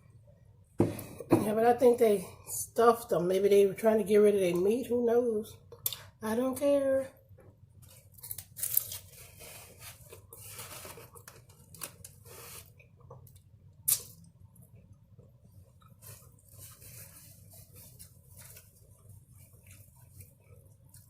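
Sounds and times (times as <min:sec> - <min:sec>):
crunching and chewing: 0:07.8 - 0:16.8.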